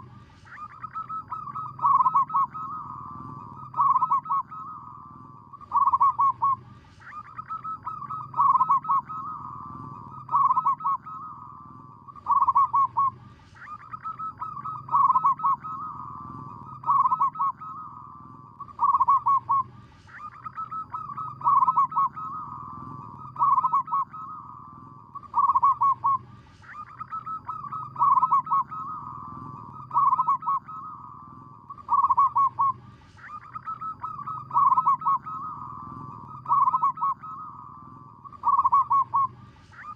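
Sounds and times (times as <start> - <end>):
dove cooing: 0.0 - 39.9
steady low hum: 0.0 - 39.9.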